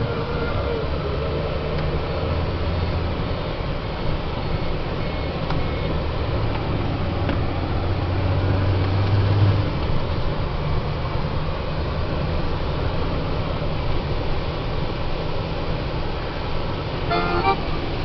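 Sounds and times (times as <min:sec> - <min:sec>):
hiss of wet road and rain: 0:00.0 - 0:18.0
truck diesel engine hum: 0:00.0 - 0:18.0.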